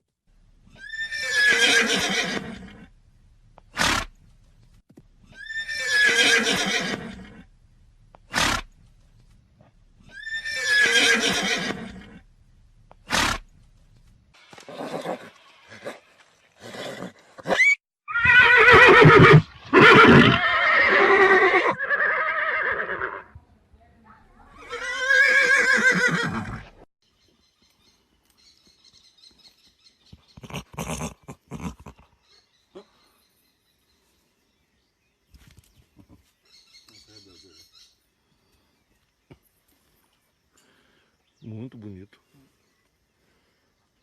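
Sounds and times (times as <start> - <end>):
horse neighing: 0.7 - 2.9, 5.3 - 7.5, 10.0 - 12.2, 14.6 - 23.3, 24.6 - 26.8, 30.4 - 32.1.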